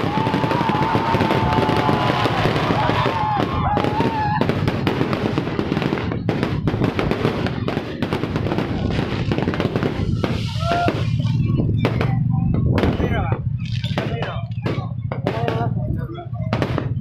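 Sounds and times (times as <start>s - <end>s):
fireworks bangs and crackles: 0.0s - 17.0s.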